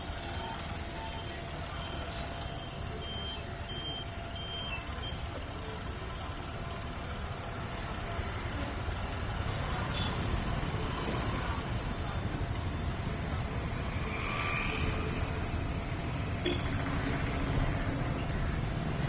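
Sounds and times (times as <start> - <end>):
city road traffic: 0.0 - 19.0
reversing alarm beeps: 0.4 - 5.3.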